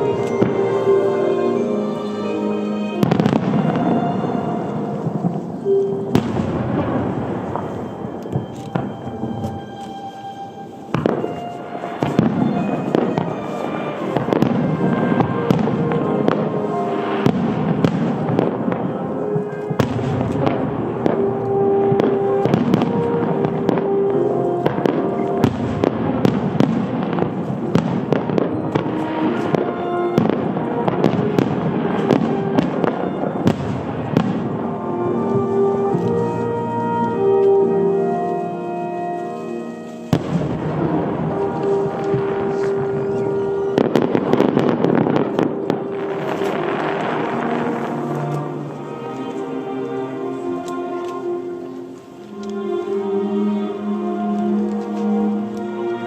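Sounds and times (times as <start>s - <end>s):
music: 0.0s - 56.0s
fireworks bursting with booms: 2.9s - 37.5s, 40.0s - 50.0s.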